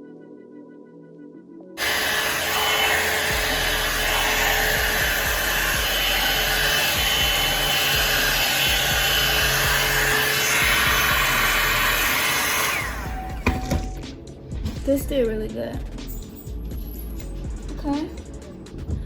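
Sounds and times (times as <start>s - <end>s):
blow dryer running: 1.8s - 14.1s.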